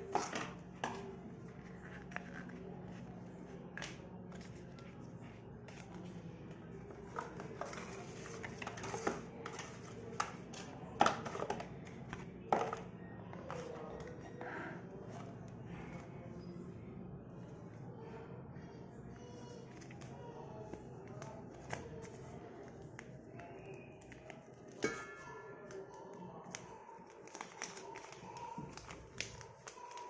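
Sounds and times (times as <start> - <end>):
packaging handled clicks and rustles: 26.4 - 30.0.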